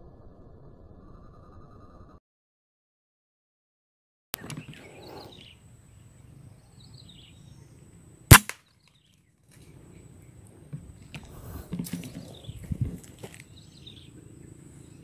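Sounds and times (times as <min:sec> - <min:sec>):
air rifle shot: 0:08.3 - 0:08.6.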